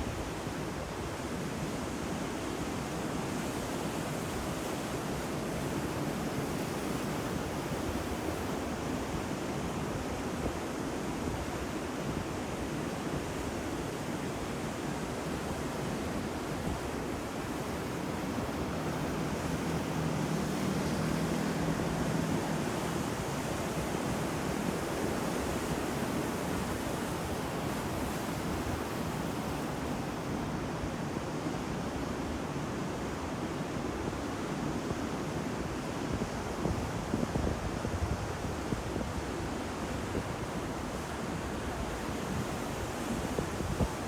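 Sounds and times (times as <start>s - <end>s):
ocean waves breaking: 16.1s - 30.6s.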